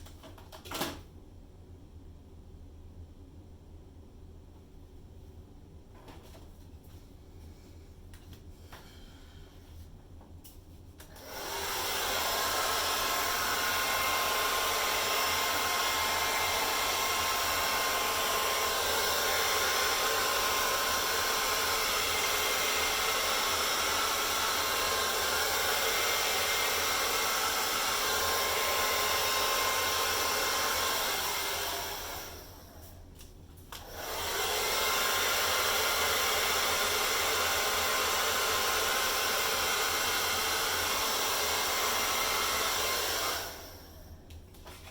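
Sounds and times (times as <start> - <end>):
hairdryer running: 11.0 - 33.0, 33.7 - 44.1.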